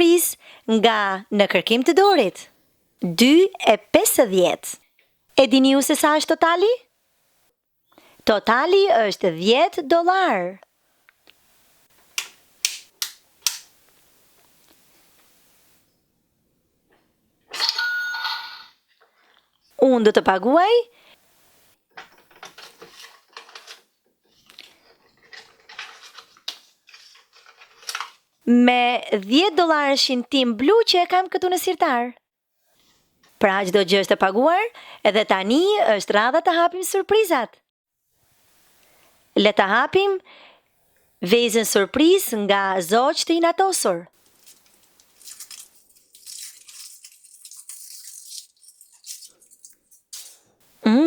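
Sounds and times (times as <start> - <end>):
paper money rustling: 22.0 - 28.3, 44.2 - 50.5
foil wrapper crinkling: 22.1 - 28.4, 44.2 - 50.4.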